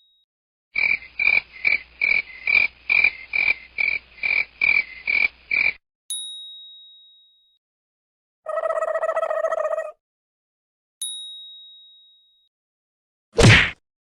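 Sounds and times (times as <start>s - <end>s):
frog-like croaking: 0.8s - 5.8s, 8.5s - 10.0s.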